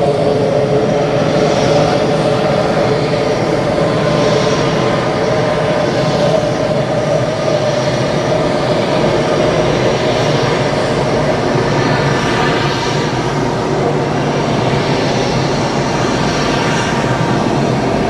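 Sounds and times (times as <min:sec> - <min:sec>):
jet engines running: 0:00.0 - 0:18.0.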